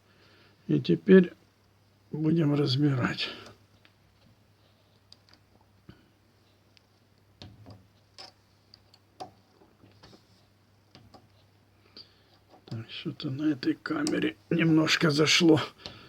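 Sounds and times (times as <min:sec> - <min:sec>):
metal parts and tools clicking: 0:08.2 - 0:09.6.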